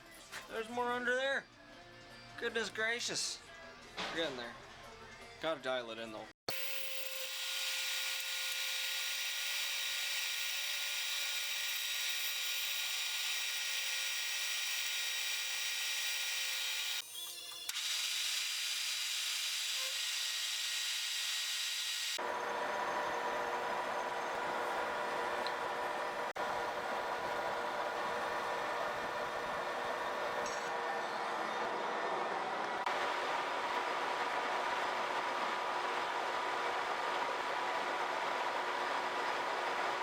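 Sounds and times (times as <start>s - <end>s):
machine tool cutting metal: 6.5s - 22.2s.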